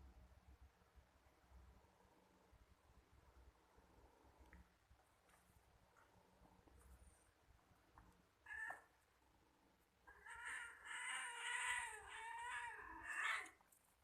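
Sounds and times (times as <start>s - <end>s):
cat meowing: 8.4s - 8.9s, 10.1s - 13.6s.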